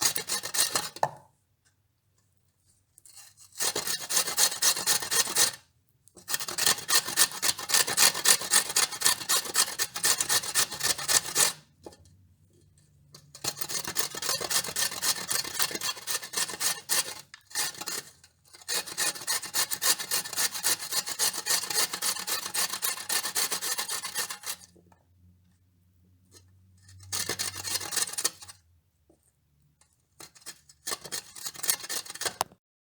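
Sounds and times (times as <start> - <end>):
carrot rasping on a grater: 0.0 - 1.2, 3.0 - 12.0, 13.2 - 24.8, 26.8 - 28.6, 29.8 - 32.5.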